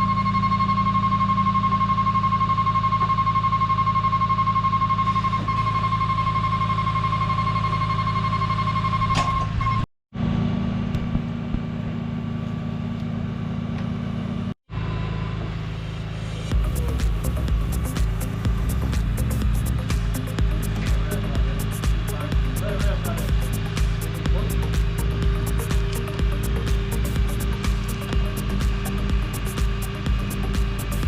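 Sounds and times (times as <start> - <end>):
steady high-pitched tone: 0.0 - 9.8, 14.7 - 31.0
machinery engine running: 10.2 - 31.0.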